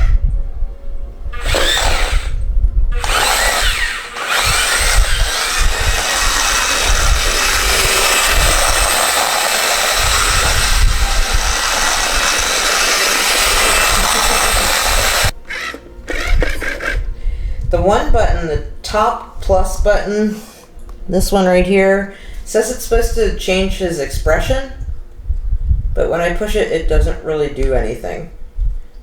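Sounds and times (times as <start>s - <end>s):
toy robot motors whirring: 1.4s - 17.0s.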